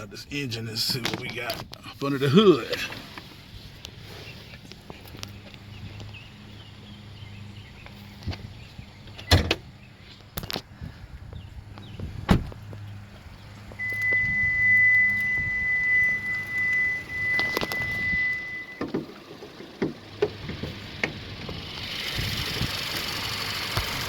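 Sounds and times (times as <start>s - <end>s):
car door thunks: 9.1s - 9.7s, 11.9s - 12.7s, 13.8s - 21.2s
high-pitched warning tone: 13.8s - 18.8s.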